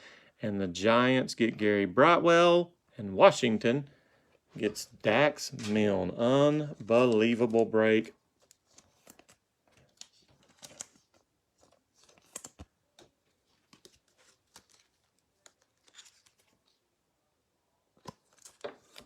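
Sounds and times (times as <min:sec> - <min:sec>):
trading cards clicking and rustling: 0:06.7 - 0:16.8, 0:18.0 - 0:19.0.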